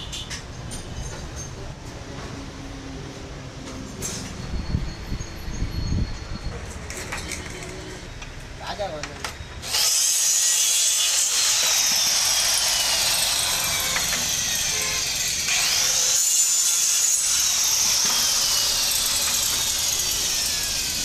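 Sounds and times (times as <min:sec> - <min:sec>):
electric power tool whining: 0:09.6 - 0:21.0.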